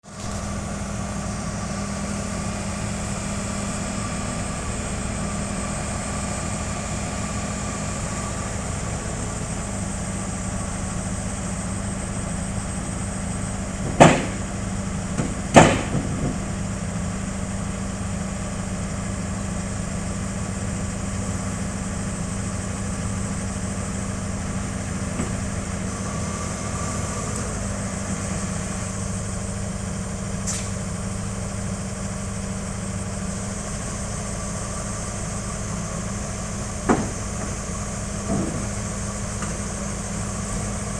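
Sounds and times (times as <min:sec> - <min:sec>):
diesel engine idling: 0:00.0 - 0:40.9
sharp knocks: 0:13.8 - 0:16.6, 0:36.8 - 0:39.6.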